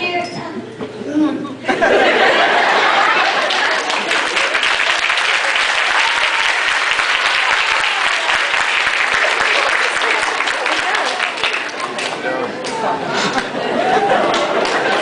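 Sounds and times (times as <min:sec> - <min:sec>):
voices in crowd: 0:00.0 - 0:15.0
audience applauding: 0:02.2 - 0:15.0.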